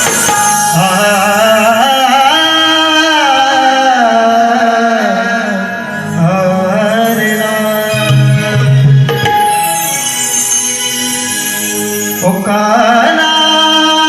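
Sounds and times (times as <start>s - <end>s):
instrumental accompaniment: 0.0s - 13.8s
man singing a wavering melisma: 0.7s - 9.0s.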